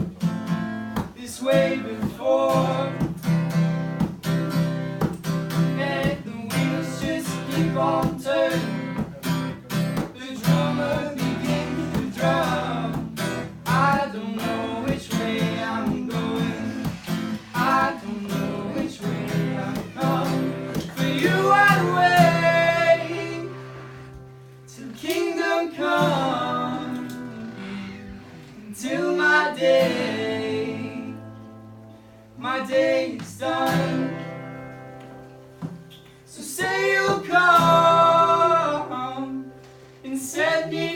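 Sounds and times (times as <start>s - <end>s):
acoustic guitar strumming: 0.0s - 40.9s
person singing: 5.7s - 9.2s, 10.2s - 24.0s, 24.8s - 31.2s.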